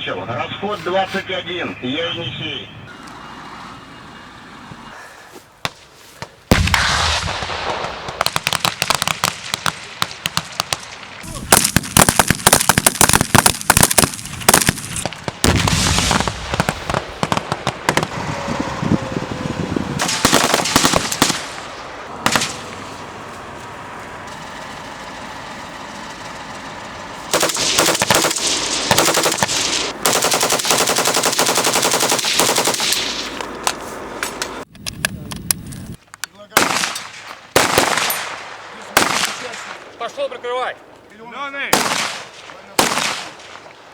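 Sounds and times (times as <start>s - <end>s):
automatic weapons firing: 6.5s - 18.2s, 20.0s - 22.7s, 27.3s - 33.4s, 36.6s - 40.0s, 41.7s - 43.8s.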